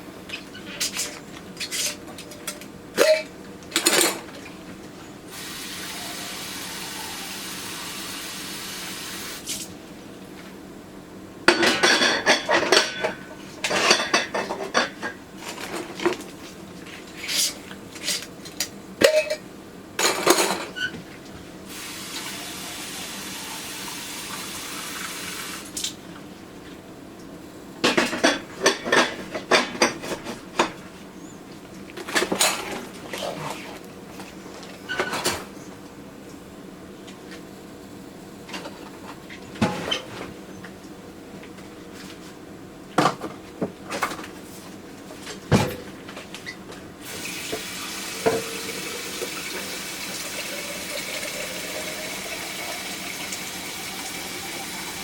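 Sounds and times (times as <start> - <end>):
water running from faucet: 5.3 - 9.5, 21.7 - 25.7, 47.1 - 55.0.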